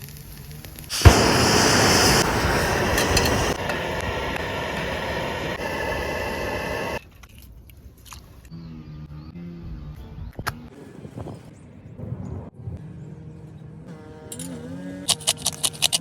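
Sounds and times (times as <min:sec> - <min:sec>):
bacon and egg sizzling on grill: 0:00.1 - 0:07.0.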